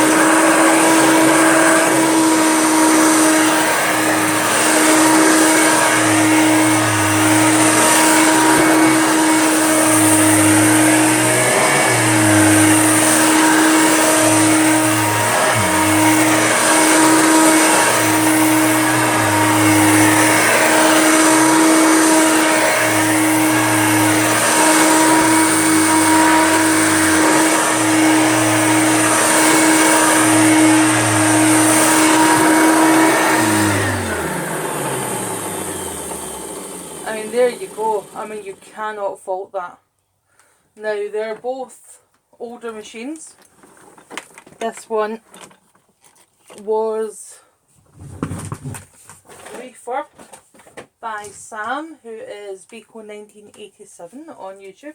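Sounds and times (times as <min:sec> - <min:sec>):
vacuum motor winding down: 0:00.0 - 0:38.6
vacuum cleaner running: 0:00.0 - 0:38.9.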